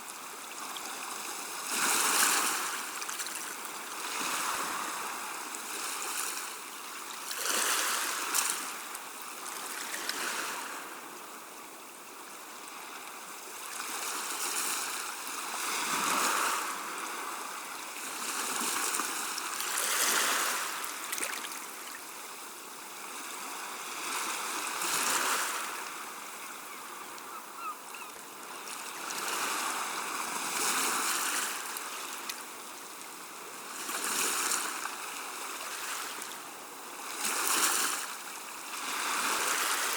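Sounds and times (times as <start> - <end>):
sea waves washing: 14.7 - 32.3
faint gull call: 26.3 - 28.3.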